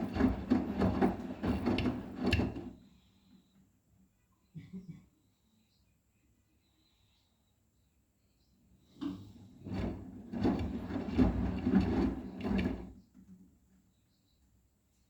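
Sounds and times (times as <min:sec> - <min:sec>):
washing machine knocking and sliding: 0:00.0 - 0:02.8, 0:09.0 - 0:13.0.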